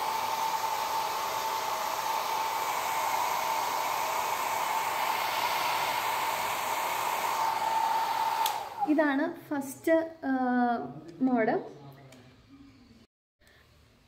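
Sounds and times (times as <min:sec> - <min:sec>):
hair dryer running: 0:00.0 - 0:09.0.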